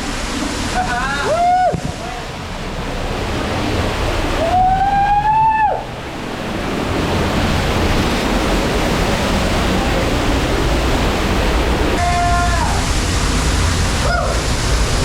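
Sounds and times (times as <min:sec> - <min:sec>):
waterfall rushing: 0:00.0 - 0:15.0
person whooping call: 0:14.0 - 0:14.4.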